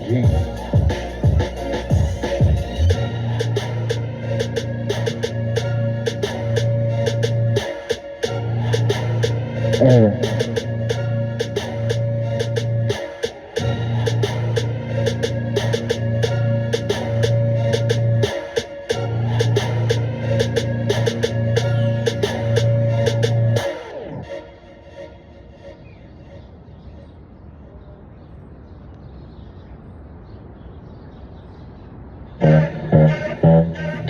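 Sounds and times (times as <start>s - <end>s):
deep bass note: 0.0s - 4.9s, 32.4s - 34.0s
drum and hi-hat hits: 0.0s - 16.0s, 16.7s - 23.7s
hip-hop beat: 0.0s - 24.1s, 32.4s - 34.0s
room ambience: 0.0s - 25.0s.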